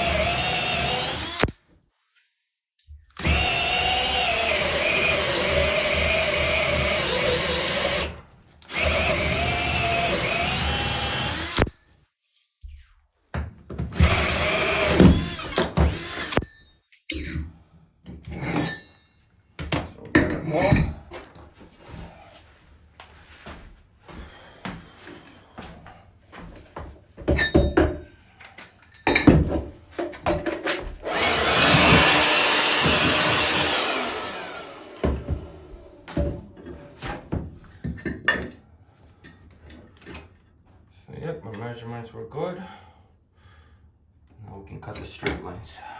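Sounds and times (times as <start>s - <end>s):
power drill motor whine: 0.0s - 1.5s, 3.2s - 11.7s, 14.0s - 16.5s, 31.0s - 35.8s
drill click: 0.0s - 1.6s, 3.2s - 11.8s, 14.0s - 16.5s, 31.0s - 35.3s
handling knocks and clatters: 28.9s - 31.0s.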